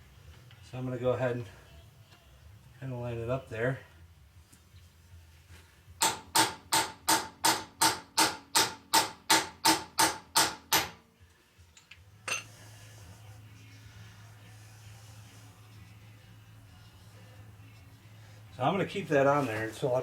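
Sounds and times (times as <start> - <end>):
hammer tapping metal: 6.0 - 10.9.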